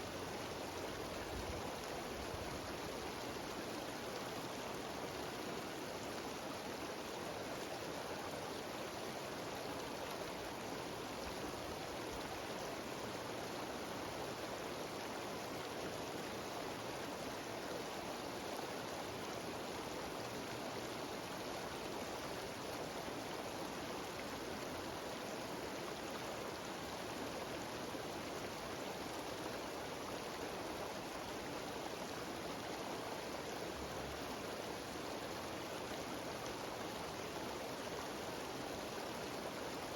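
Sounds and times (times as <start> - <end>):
water rushing down a waterfall: 0.0 - 39.9.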